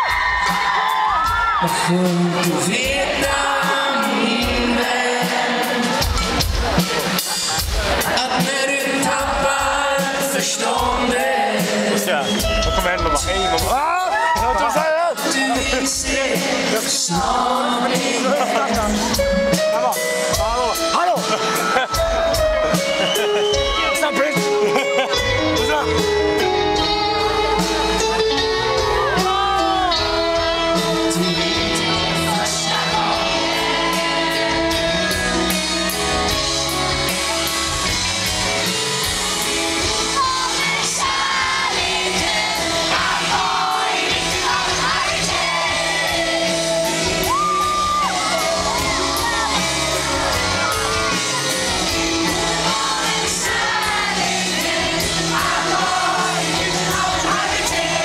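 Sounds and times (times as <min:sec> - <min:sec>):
shouts and whoops: 0:00.0 - 0:01.8, 0:13.8 - 0:14.9, 0:47.2 - 0:49.8
live rock band playing: 0:00.0 - 0:58.0
person singing: 0:27.2 - 0:36.1.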